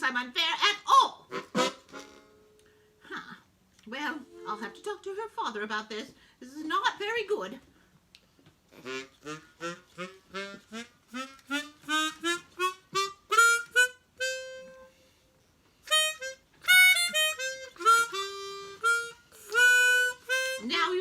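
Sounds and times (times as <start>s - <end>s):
reedy wind instrument tune: 0.7s - 2.3s, 4.2s - 5.1s, 8.7s - 15.2s, 15.8s - 21.0s.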